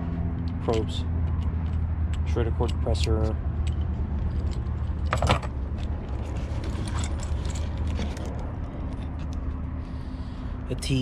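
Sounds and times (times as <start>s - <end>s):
tools rattling and clicking: 0.4s - 9.6s
tools clattering: 0.7s - 9.3s.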